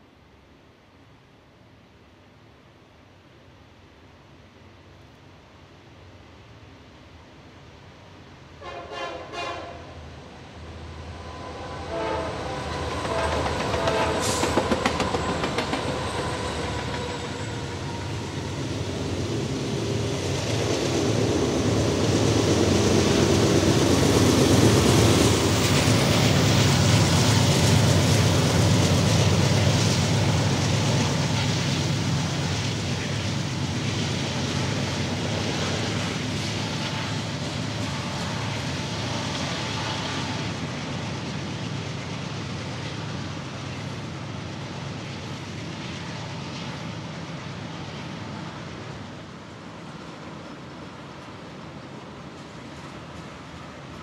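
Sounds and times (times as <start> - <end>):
locomotive horn: 8.6 - 9.9, 11.8 - 14.5
train wheels rumbling: 8.6 - 54.0.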